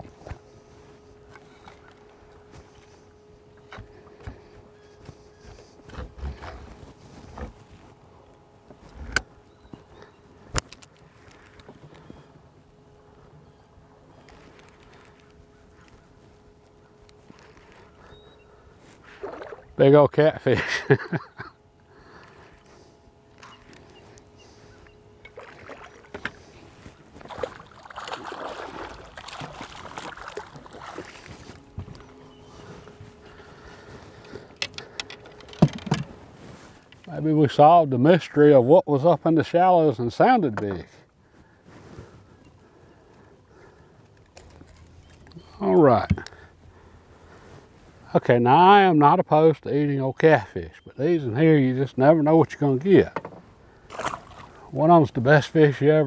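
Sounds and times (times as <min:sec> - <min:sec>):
gear knocking in a boat: 0:05.4 - 0:07.6, 0:23.3 - 0:37.1.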